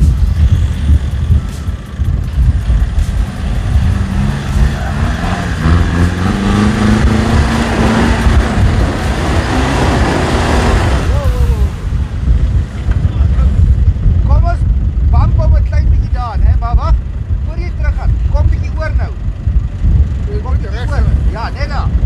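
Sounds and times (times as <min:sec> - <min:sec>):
engine running under load: 0:00.0 - 0:15.1.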